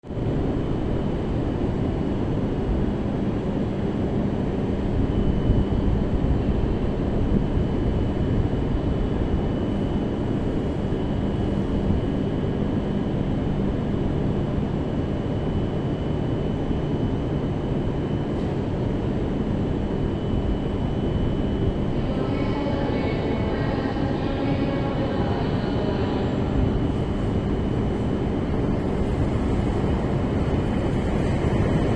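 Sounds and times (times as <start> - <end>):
train pulling into station: 7.7 - 31.9.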